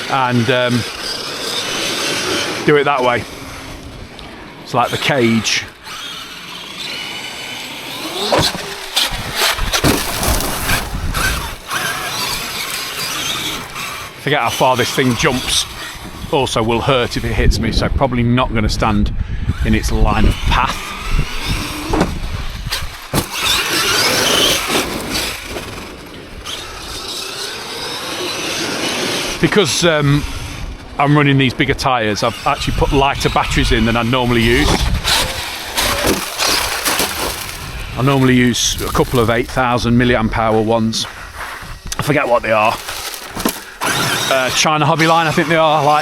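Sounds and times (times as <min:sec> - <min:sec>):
tyres on the ground: 0:00.0 - 0:17.2, 0:19.7 - 0:31.2, 0:32.1 - 0:45.5
rc truck motor whine: 0:00.0 - 0:18.0, 0:18.6 - 0:46.0
truck rumbling and knocking: 0:07.9 - 0:13.8, 0:20.3 - 0:26.8.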